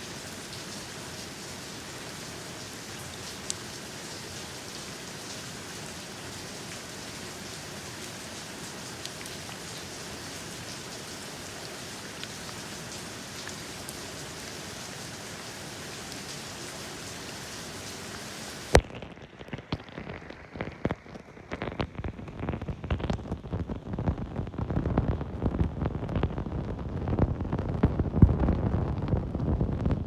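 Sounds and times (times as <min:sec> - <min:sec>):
steady rain hiss: 0:00.0 - 0:30.0.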